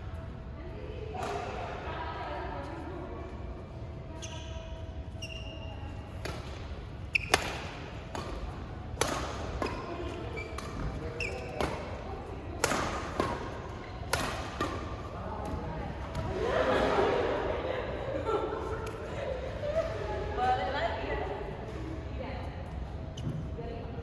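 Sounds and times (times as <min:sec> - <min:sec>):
shoes squeaking on court: 0:04.0 - 0:08.6, 0:09.4 - 0:12.1
rackets striking shuttlecock: 0:06.2 - 0:16.3.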